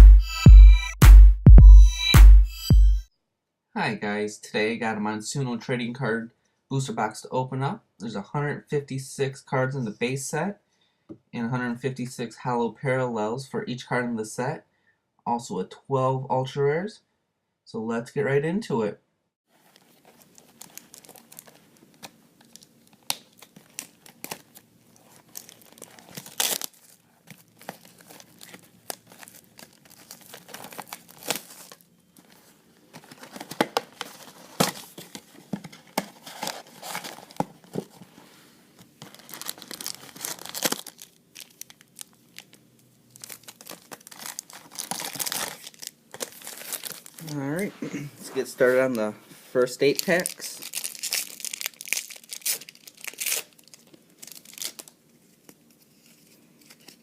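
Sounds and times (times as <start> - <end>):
plastic wrapping tearing and crinkling: 19.5 - 37.8, 39.0 - 47.6, 49.8 - 57.0.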